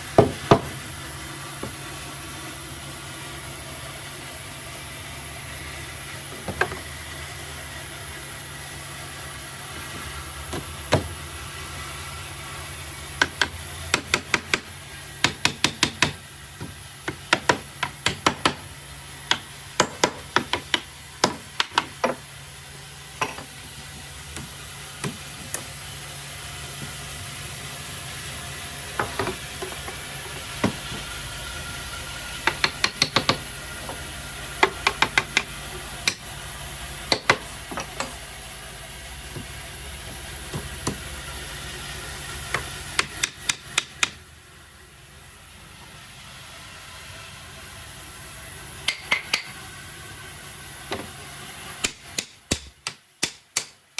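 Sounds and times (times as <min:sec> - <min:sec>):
hammer knocking on wood: 0:00.2 - 0:00.8, 0:13.2 - 0:18.6, 0:19.3 - 0:22.2.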